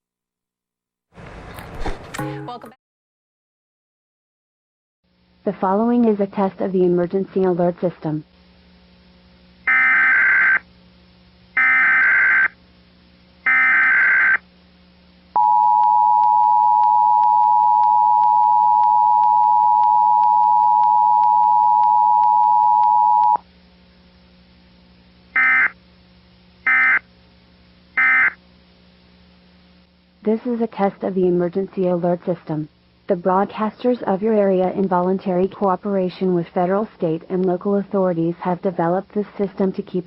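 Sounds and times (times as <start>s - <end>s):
screeching digital data bursts: 11.6s - 12.6s, 13.5s - 14.4s
short data bursts: 13.4s - 14.4s, 25.4s - 25.8s, 28.0s - 28.4s.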